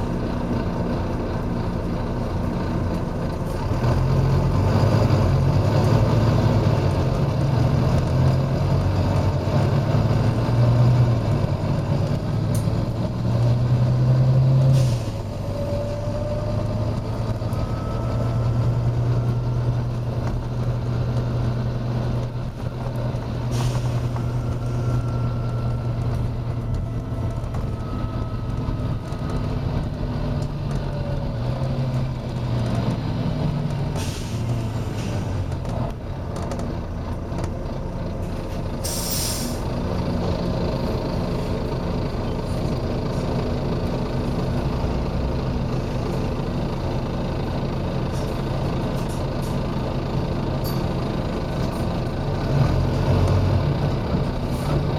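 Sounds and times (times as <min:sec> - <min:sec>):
bus diesel engine under load: 0:00.0 - 0:54.9.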